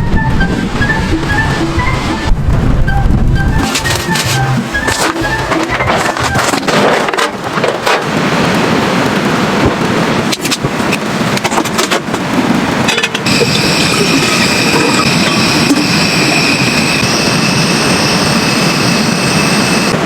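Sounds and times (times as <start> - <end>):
blizzard wind roaring: 0.0 - 20.0
steady high whine: 12.7 - 20.0.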